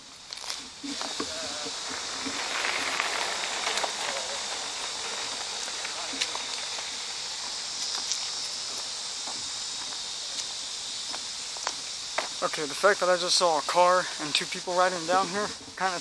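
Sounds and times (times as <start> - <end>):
insect chorus: 0.0 - 16.0.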